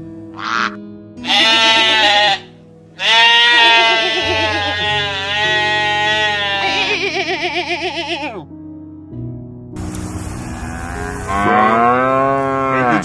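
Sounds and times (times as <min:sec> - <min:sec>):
background music: 0:00.0 - 0:13.0
farm animal bleating: 0:00.4 - 0:08.5, 0:10.5 - 0:13.0.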